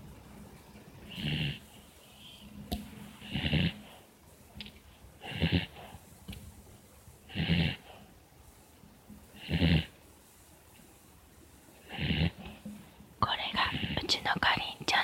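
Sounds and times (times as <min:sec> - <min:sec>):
dog snoring: 0:01.1 - 0:01.8, 0:03.1 - 0:04.1, 0:05.2 - 0:06.0, 0:07.3 - 0:08.1, 0:09.4 - 0:10.0, 0:11.8 - 0:12.6, 0:13.6 - 0:14.2.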